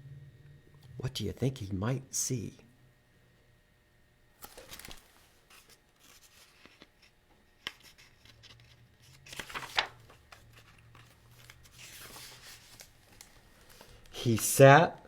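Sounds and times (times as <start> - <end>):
book pages rustling: 4.4 - 14.6.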